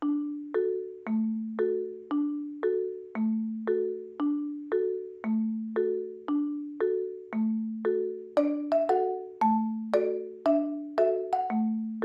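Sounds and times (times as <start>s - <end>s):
ringing struck notes music: 8.4s - 12.0s.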